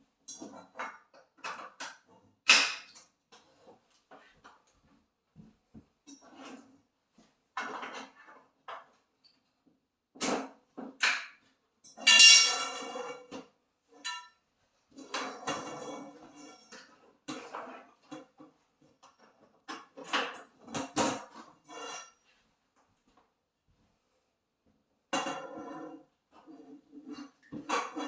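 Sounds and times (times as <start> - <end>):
metal poles knocking and clinking: 12.0 - 13.0, 14.0 - 14.4.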